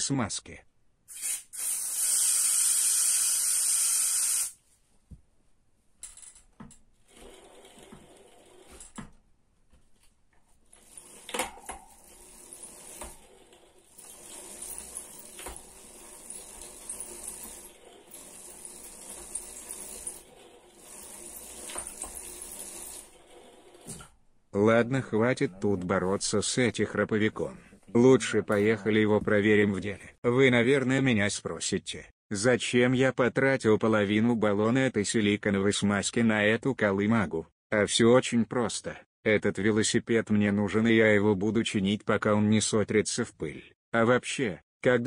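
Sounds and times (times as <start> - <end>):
aerosol can spraying: 1.1 - 4.6.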